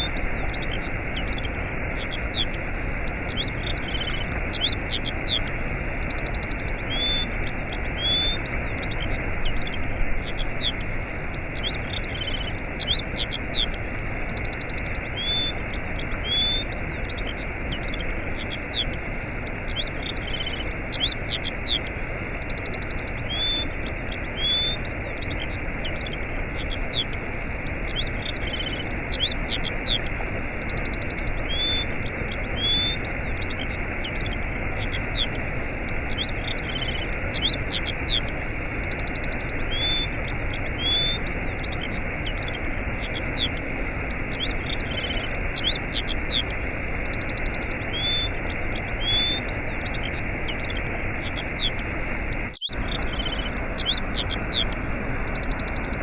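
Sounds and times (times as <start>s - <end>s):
small birds chirping and trilling: 0.0s - 56.0s
waterfall rushing: 39.4s - 56.0s.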